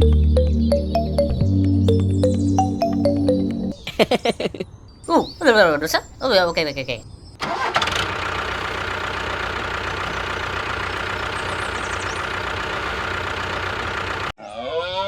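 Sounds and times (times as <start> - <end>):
engine idling: 7.4 - 14.4.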